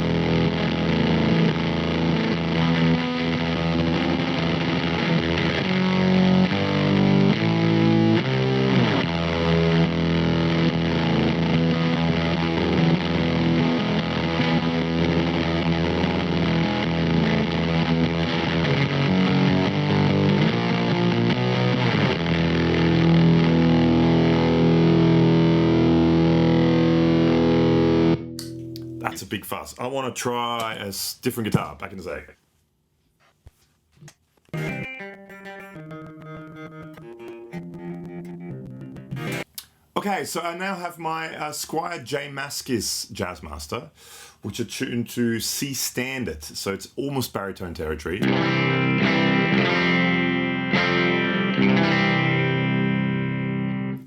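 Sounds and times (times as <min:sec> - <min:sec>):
fuzzed electric guitar: 0:00.0 - 0:29.3, 0:34.5 - 0:39.7, 0:48.2 - 0:54.0.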